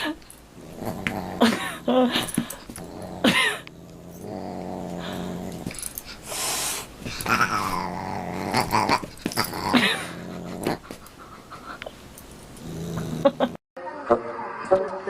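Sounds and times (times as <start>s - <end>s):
dog growling: 0.5s - 6.3s, 7.0s - 11.6s, 12.4s - 13.6s.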